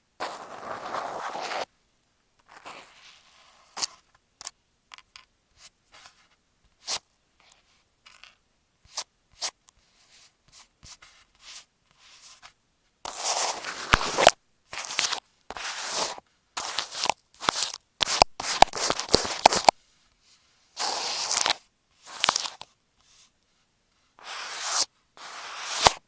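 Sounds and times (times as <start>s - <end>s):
rough scratching on taped microphone: 0.2s - 1.7s, 13.1s - 19.7s, 20.8s - 23.2s, 24.2s - 26.0s.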